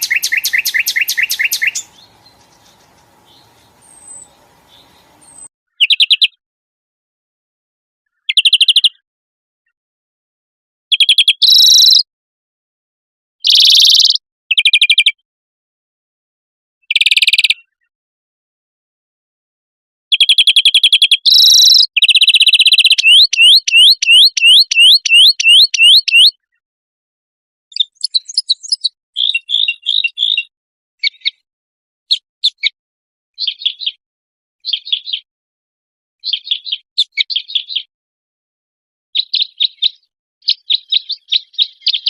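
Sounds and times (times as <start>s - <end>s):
buzzy bird trills: 0.0s - 6.0s
rising whistled bird notes: 0.0s - 6.1s, 21.3s - 26.3s
bird chirping phrases: 0.0s - 6.4s, 8.1s - 9.0s, 10.9s - 12.1s, 13.4s - 15.2s, 16.9s - 17.9s, 20.1s - 26.6s, 27.7s - 31.5s, 32.1s - 32.8s, 33.4s - 34.0s, 34.6s - 35.3s, 36.2s - 37.9s, 39.2s - 42.0s.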